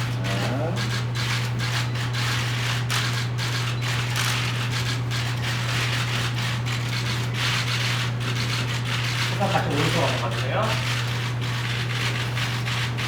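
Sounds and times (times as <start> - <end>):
camera shutters clicking: 4.1 - 4.4.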